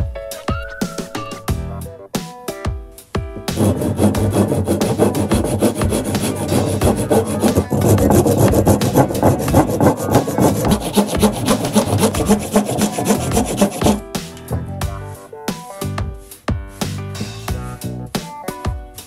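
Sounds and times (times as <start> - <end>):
file scraping metal: 3.4 - 14.0.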